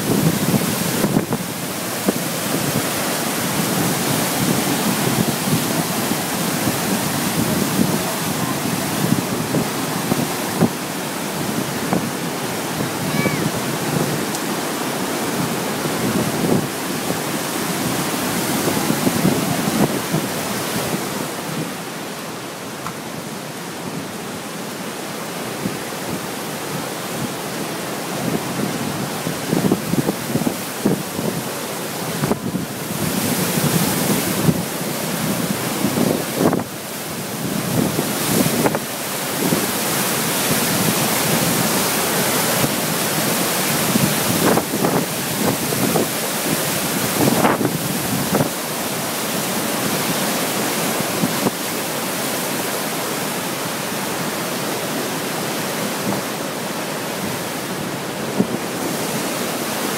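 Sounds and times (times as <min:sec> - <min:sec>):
floodwater rushing: 0:00.0 - 0:59.9
wind gusting against microphone: 0:00.0 - 0:59.9.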